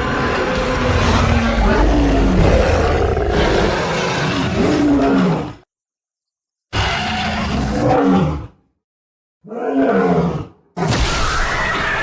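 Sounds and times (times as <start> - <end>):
monster growling roar: 0.0 - 5.6.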